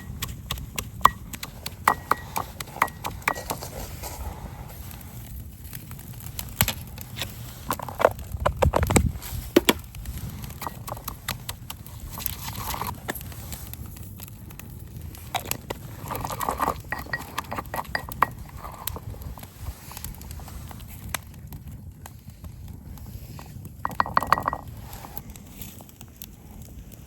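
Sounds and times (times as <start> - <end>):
wood fire crackling: 0.0 - 27.0
hollow knocking and clinking: 1.9 - 3.6, 16.1 - 19.0, 23.8 - 24.7.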